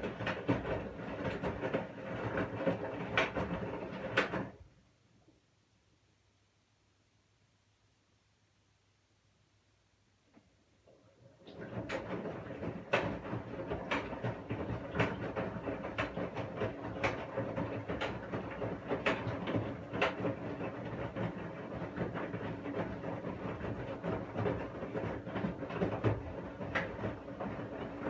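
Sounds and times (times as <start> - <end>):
washing machine drum rumbling: 0.0 - 4.5, 11.5 - 28.0.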